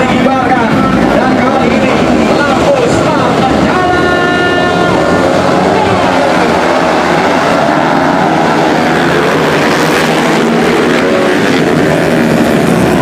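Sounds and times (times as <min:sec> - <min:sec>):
motorcycle engines revving: 0:00.0 - 0:13.0.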